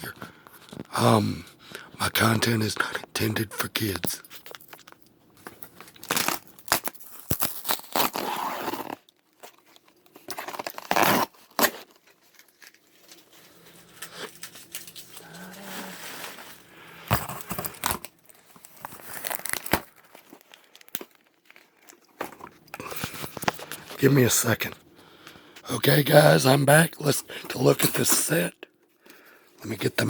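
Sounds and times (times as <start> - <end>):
packaging crinkling and tearing: 3.9 - 24.0.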